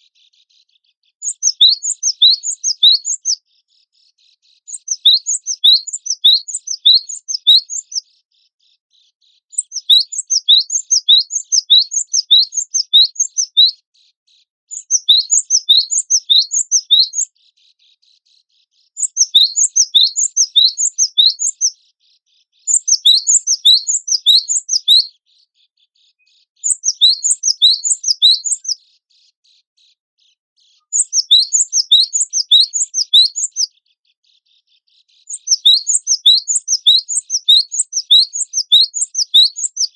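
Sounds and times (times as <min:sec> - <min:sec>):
bird singing high chirps: 0:00.0 - 0:03.4, 0:04.3 - 0:08.2, 0:09.4 - 0:13.8, 0:14.7 - 0:17.4, 0:18.8 - 0:21.8, 0:22.6 - 0:25.2, 0:26.1 - 0:28.8, 0:30.2 - 0:33.9, 0:34.6 - 0:39.9.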